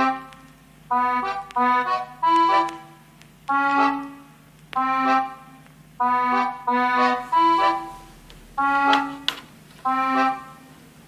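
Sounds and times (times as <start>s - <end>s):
held reedy chords: 6.9s - 11.0s.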